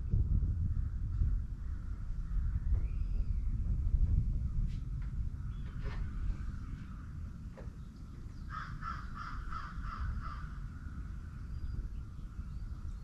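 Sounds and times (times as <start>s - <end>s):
low background rumble: 0.0s - 13.0s
crow cawing: 8.5s - 11.0s.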